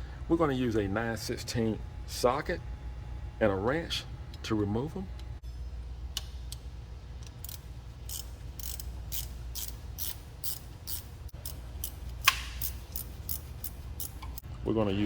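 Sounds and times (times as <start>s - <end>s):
sharp metallic click: 7.2s - 14.4s
socket ratchet clicking: 7.2s - 14.4s.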